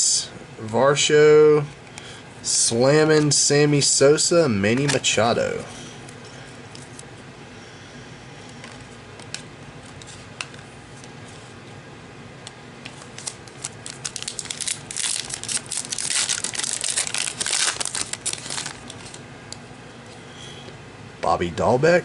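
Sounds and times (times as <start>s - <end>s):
plastic wrapper crinkling: 13.0s - 19.2s.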